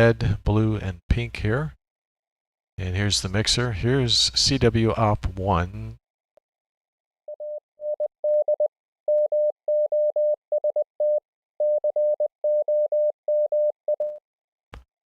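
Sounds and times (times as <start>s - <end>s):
morse code tone: 7.3s - 14.2s.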